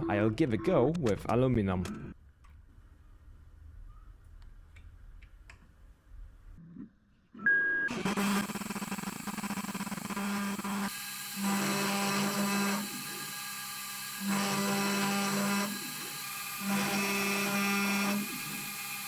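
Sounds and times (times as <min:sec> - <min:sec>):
milling machine spindle hum: 0:08.1 - 0:19.0.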